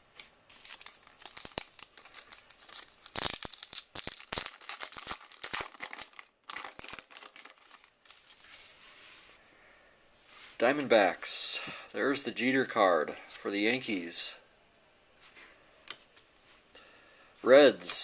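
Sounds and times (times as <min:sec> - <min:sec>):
wrapper crinkling and tearing: 0:00.5 - 0:08.8.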